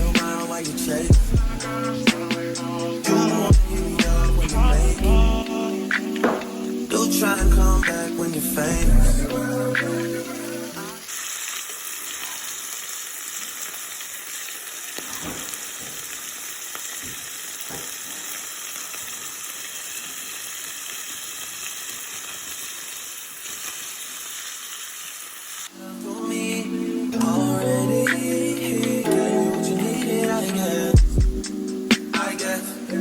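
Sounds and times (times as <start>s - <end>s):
food sizzling in hot oil: 0.2s - 4.9s, 9.3s - 25.8s.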